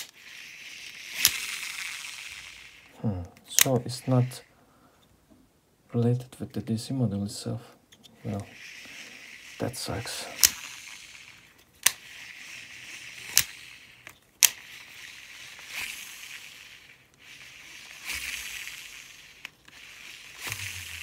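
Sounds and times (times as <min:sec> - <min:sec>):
fishing reel spool whirring: 0:00.0 - 0:03.0, 0:08.2 - 0:21.0
sharp clicks: 0:01.1 - 0:02.1, 0:10.3 - 0:12.2, 0:13.0 - 0:14.8.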